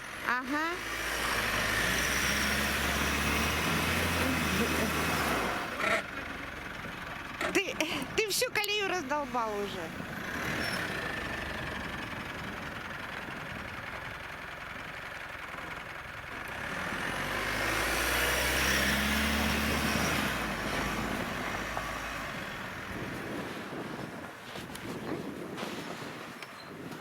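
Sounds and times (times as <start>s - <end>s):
tyre and road noise: 0.0s - 27.0s
vehicle engine pulling: 0.0s - 27.0s.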